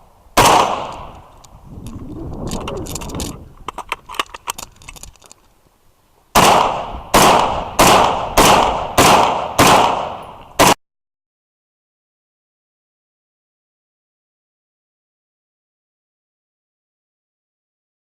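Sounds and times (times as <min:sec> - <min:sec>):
rifle shots with ringing echo: 0:00.4 - 0:01.3, 0:06.3 - 0:10.8.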